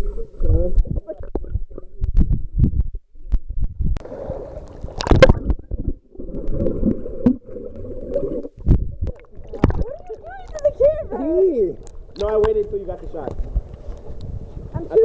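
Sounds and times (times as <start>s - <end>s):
underwater bumps and thumps: 0.0s - 11.2s, 11.8s - 15.0s
underwater gurgling and sloshing: 0.0s - 15.0s.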